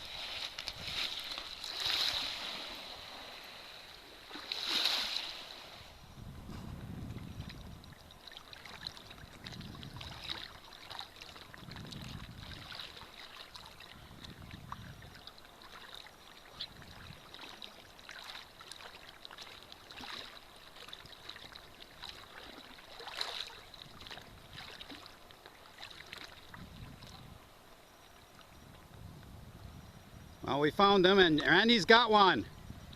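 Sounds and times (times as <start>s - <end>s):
water crackling through stones: 0.0s - 5.6s, 7.3s - 27.4s
small waves washing on beach: 0.0s - 28.6s.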